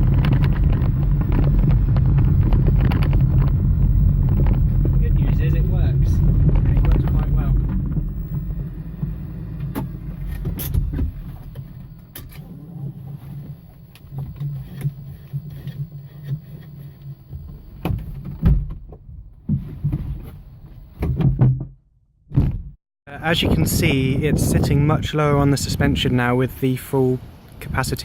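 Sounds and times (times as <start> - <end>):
vehicle hum: 0.0 - 21.2.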